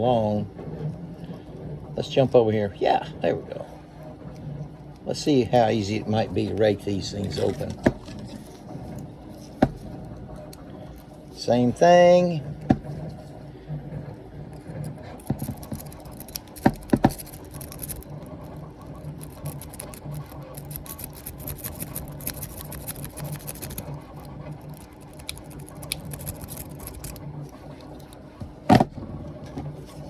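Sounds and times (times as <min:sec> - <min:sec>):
lock pick scratching and clicking: 0:14.8 - 0:28.2.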